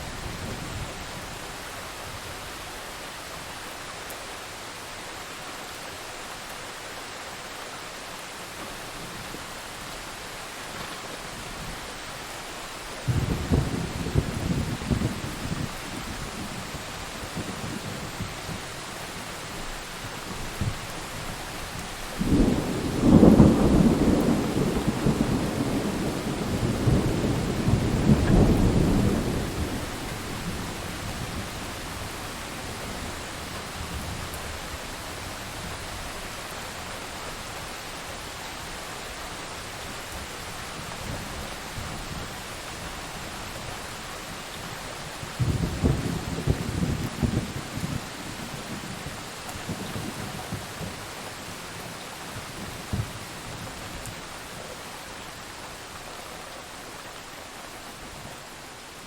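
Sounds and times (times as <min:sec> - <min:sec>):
heavy rain: 0:00.0 - 0:59.0
rolling thunder: 0:13.0 - 0:18.6, 0:22.2 - 0:33.2, 0:45.3 - 0:51.1.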